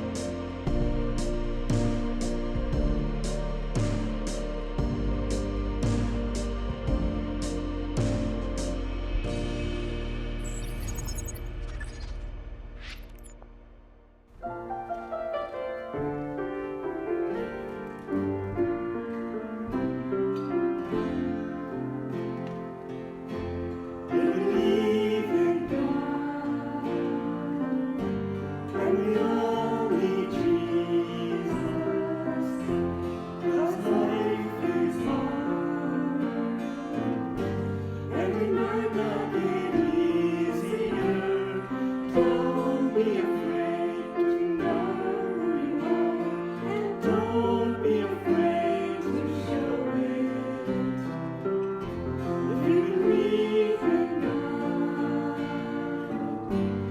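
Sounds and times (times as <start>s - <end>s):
voices singing together: 24.0s - 56.8s.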